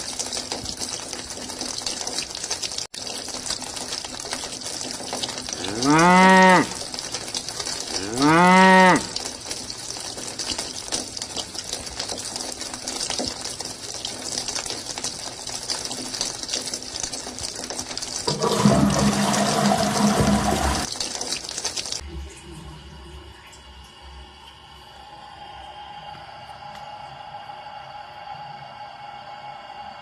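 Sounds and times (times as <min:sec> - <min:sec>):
hiss of running water: 0:04.0 - 0:17.2, 0:18.1 - 0:21.9
cow mooing: 0:05.6 - 0:06.8, 0:08.0 - 0:09.2.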